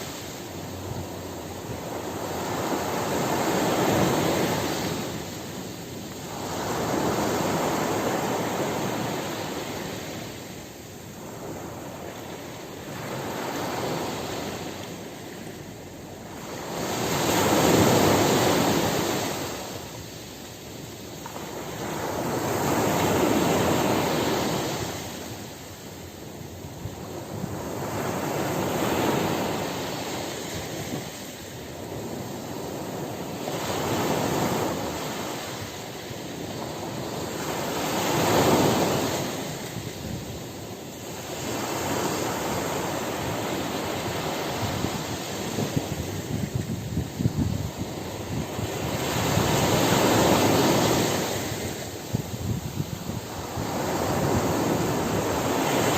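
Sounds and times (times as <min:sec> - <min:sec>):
sea waves breaking on shore: 0:00.0 - 0:55.9.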